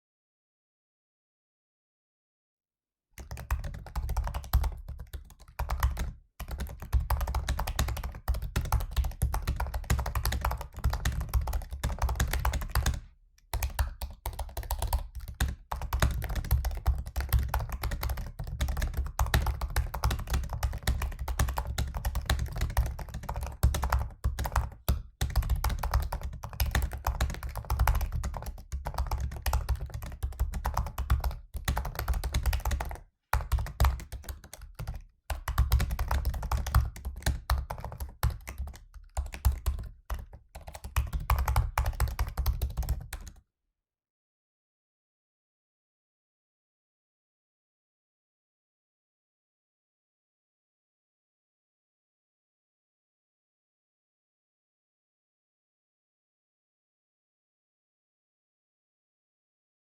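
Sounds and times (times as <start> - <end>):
fast typing on laptop keyboard: 3.2 - 43.4.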